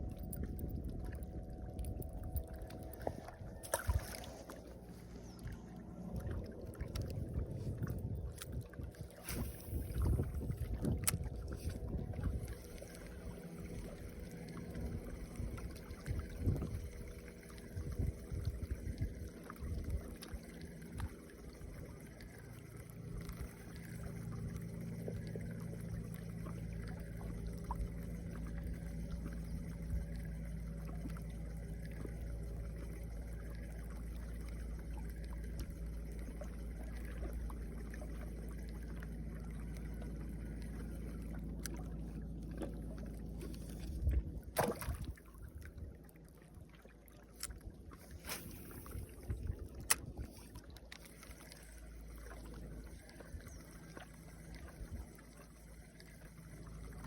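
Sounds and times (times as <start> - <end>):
wind rumbling on microphone: 0.0 - 22.2, 42.6 - 46.0, 48.0 - 50.7.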